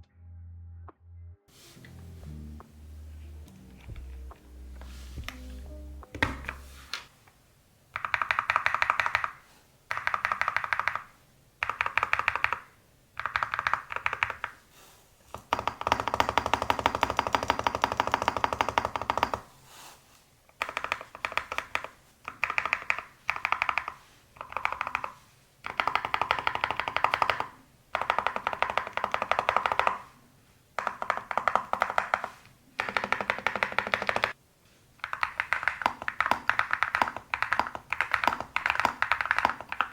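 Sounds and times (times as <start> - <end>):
thocky mechanical keyboard typing: 8.0 - 14.6, 15.4 - 19.4, 20.5 - 30.2, 30.8 - 34.4, 35.0 - 39.9.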